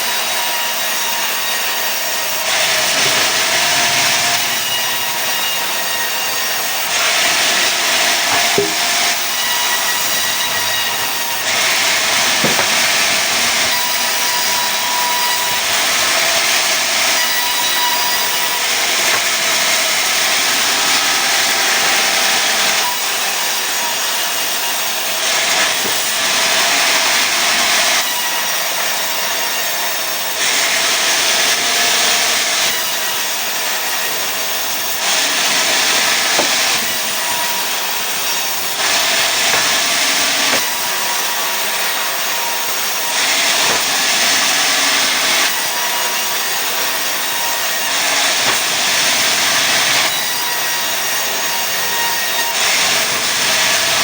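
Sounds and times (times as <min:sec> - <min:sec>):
saw cutting wood: 0:00.0 - 0:54.0.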